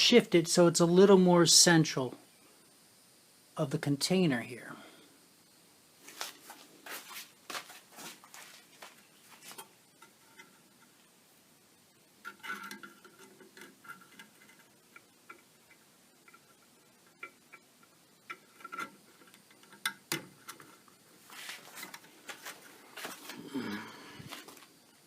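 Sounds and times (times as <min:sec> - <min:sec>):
rustling: 0:06.0 - 0:11.1, 0:11.9 - 0:24.8
hands clicking and scraping fan: 0:12.2 - 0:23.4.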